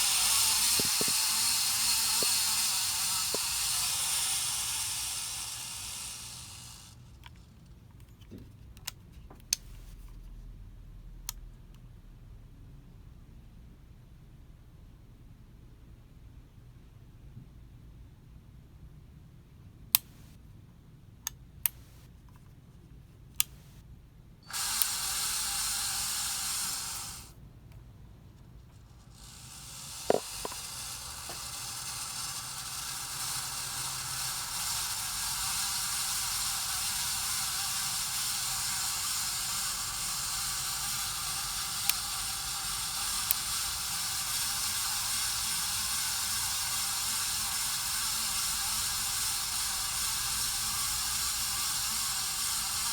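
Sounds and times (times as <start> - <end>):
ceiling fan bearing grinding: 0.0 - 7.0, 24.4 - 27.3, 28.4 - 52.9
sharp clicks: 0.0 - 7.4, 20.0 - 20.3, 29.2 - 52.9.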